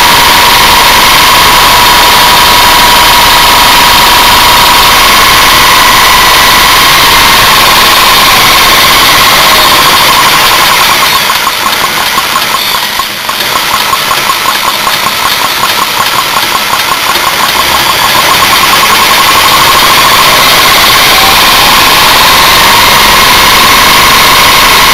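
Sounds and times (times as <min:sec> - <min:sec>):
petrol engine running with whine: 0:00.0 - 0:24.9.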